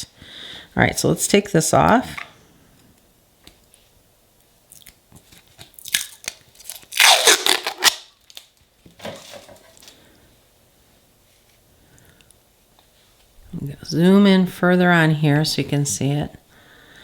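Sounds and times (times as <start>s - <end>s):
plastic film crinkling while peeled: 5.2s - 10.0s.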